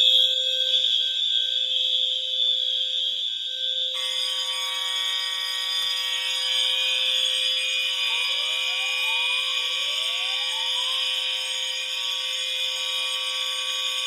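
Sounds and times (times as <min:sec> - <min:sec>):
fire alarm horns and sirens: 0:00.0 - 0:14.0
rising whooping siren: 0:07.4 - 0:14.0.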